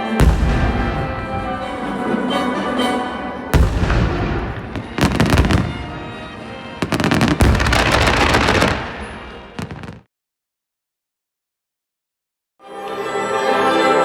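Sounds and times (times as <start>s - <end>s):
music: 0.0s - 9.9s, 12.6s - 14.0s
fireworks bangs: 0.1s - 10.1s
fireworks crackling: 0.2s - 10.1s.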